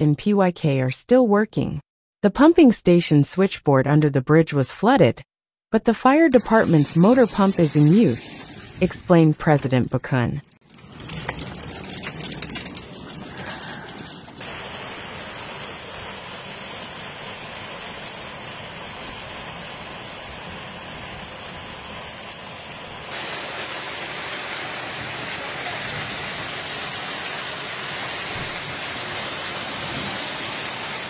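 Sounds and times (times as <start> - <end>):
heavy rain: 10.7 - 31.0
rushing flood water: 13.3 - 31.0.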